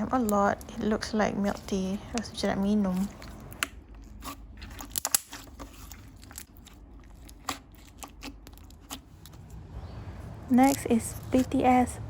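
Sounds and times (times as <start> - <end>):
slime squishing with sticky pops: 0.0 - 9.6.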